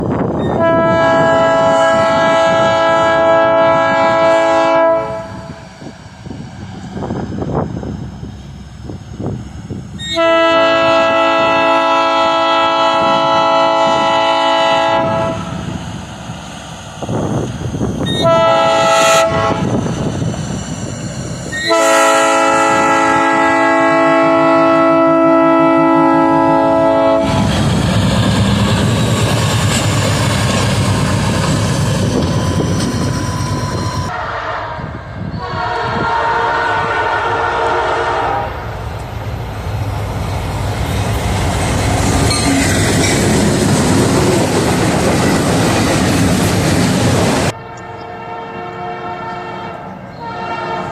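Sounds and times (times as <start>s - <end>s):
train air horn chord: 0.5s - 5.6s, 10.0s - 15.5s, 18.1s - 19.7s, 21.6s - 27.5s, 34.1s - 38.6s, 47.5s - 50.9s
train wheels clacking on rails: 27.2s - 34.1s, 40.1s - 47.6s.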